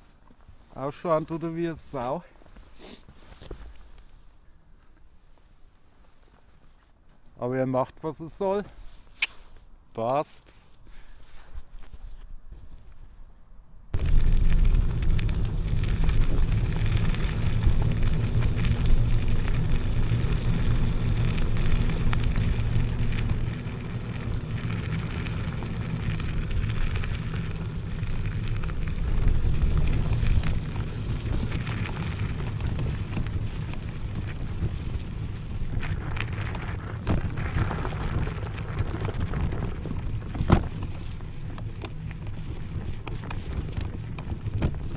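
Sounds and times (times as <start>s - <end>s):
wind buffeting microphone: 13.9s - 40.8s
scooter tyre rumble: 13.9s - 44.9s.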